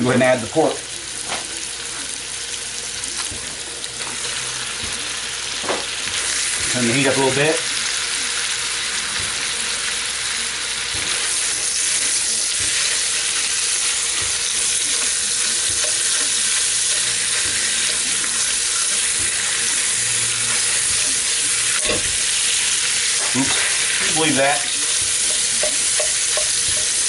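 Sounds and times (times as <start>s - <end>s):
meat sizzling in a pan: 0.0s - 27.0s
fork scraping and tapping: 10.9s - 19.8s, 24.9s - 27.0s.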